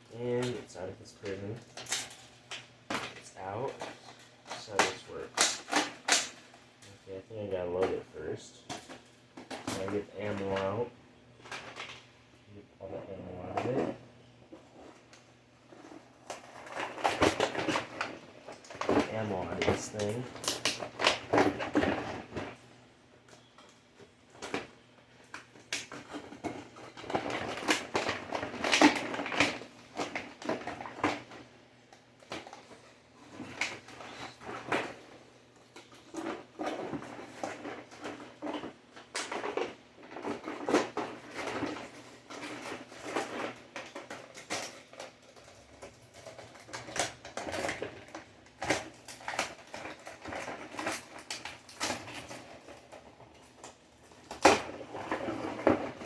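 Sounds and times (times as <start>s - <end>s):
packaging rustling and clicking: 23.3s - 56.0s.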